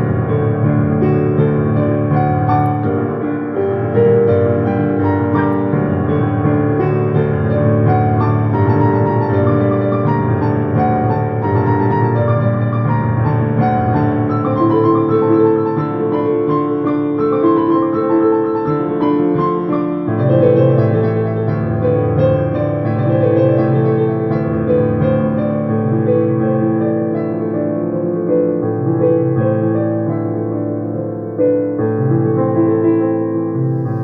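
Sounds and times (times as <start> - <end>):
slow piano music: 0.0 - 34.0.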